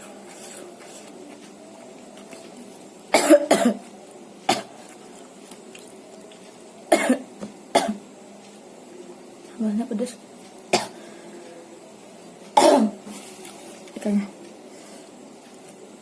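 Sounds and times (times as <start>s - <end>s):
woman coughing: 3.1s - 3.8s, 6.9s - 7.2s, 7.8s - 8.0s, 12.6s - 13.0s.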